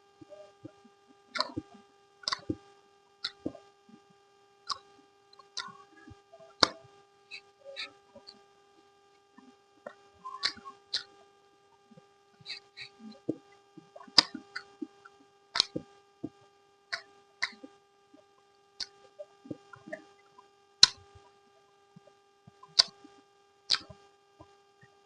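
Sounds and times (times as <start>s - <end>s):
faint steady hum: 0.0s - 25.0s
mouth smacks and chewing: 2.3s - 2.6s, 10.3s - 11.1s, 15.6s - 15.8s.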